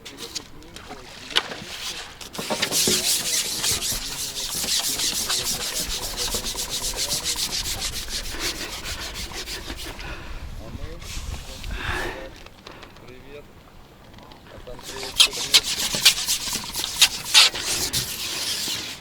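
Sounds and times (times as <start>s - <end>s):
rapid rhythmic rasping rub: 0.0s - 10.2s, 14.7s - 19.0s.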